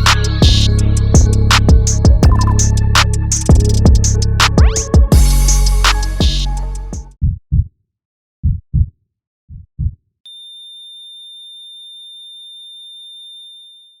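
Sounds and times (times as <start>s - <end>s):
heartbeat thumps: 0.2s - 7.7s, 8.4s - 8.9s, 9.5s - 10.0s.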